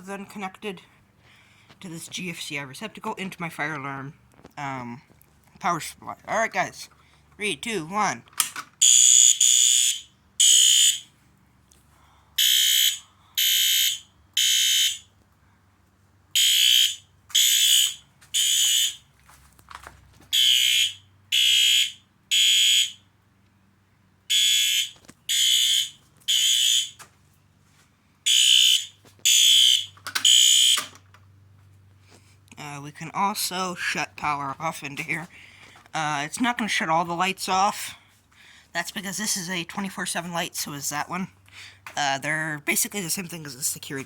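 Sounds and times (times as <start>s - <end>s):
fire alarm horn blasts: 8.8s - 11.1s, 12.4s - 15.1s, 16.4s - 19.1s, 20.3s - 23.1s, 24.3s - 27.0s, 28.3s - 31.0s.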